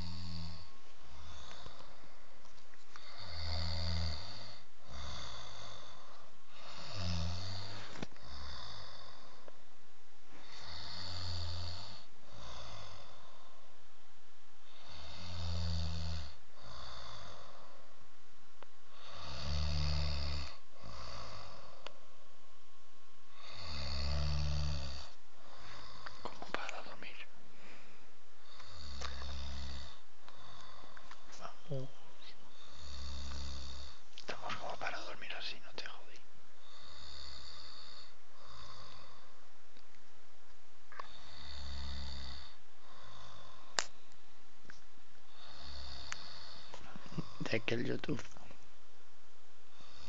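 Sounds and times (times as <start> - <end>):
person snoring: 0.0 - 2.2, 2.9 - 9.5, 10.4 - 13.6, 14.6 - 17.9, 18.9 - 21.9, 23.3 - 27.0, 28.4 - 31.8, 32.4 - 35.2, 36.6 - 39.4, 40.9 - 43.8, 45.3 - 47.6, 49.7 - 50.0.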